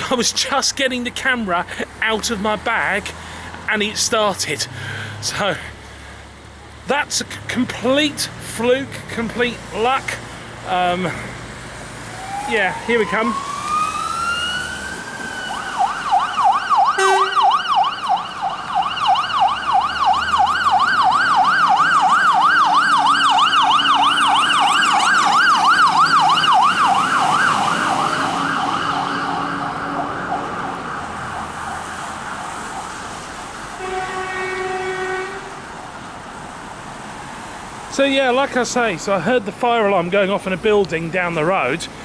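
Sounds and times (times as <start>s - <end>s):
fire engine siren: 11.8s - 36.0s
horn blast: 17.0s - 17.5s, 33.8s - 35.6s.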